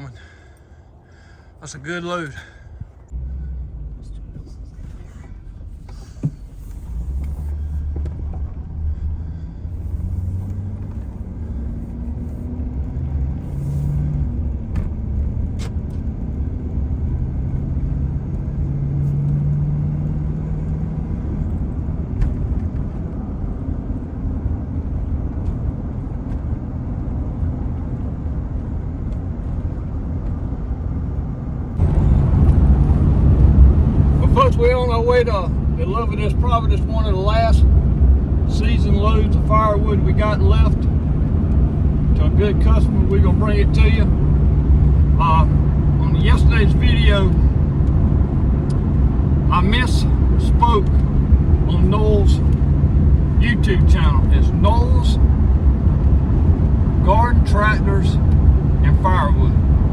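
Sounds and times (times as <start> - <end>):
road rumble: 0.0 - 59.9
vehicle engine: 0.0 - 59.9.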